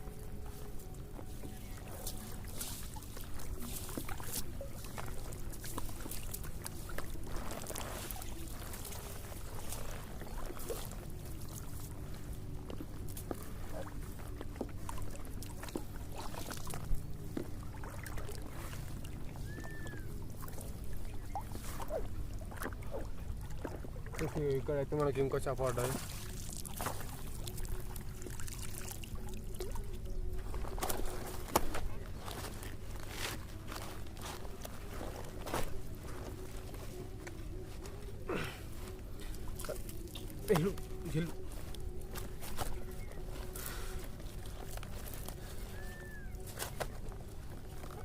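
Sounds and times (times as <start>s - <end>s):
water splashing and dripping: 12.7s - 25.1s, 25.8s - 31.9s.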